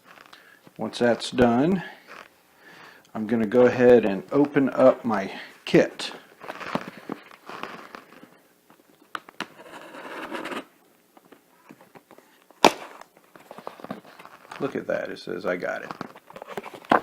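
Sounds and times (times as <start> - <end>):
packaging rustling and crinkling: 0.0 - 1.4, 6.3 - 9.4, 11.7 - 14.9, 15.5 - 17.0.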